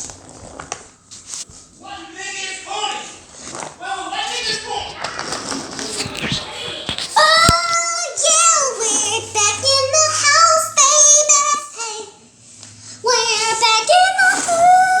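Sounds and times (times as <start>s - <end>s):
child singing: 6.0s - 12.3s, 13.0s - 15.0s.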